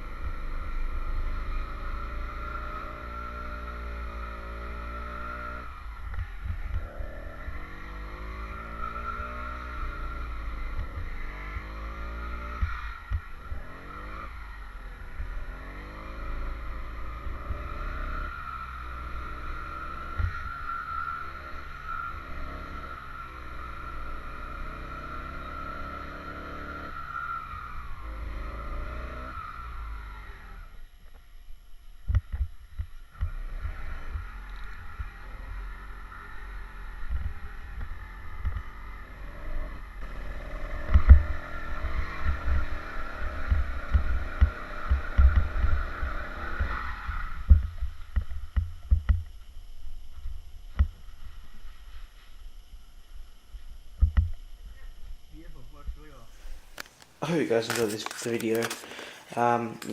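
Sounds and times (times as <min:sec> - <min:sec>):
two-stroke engine revving: 0:00.0 - 0:30.7, 0:33.2 - 0:47.6
low rumble with short thumps: 0:47.2 - 0:51.1.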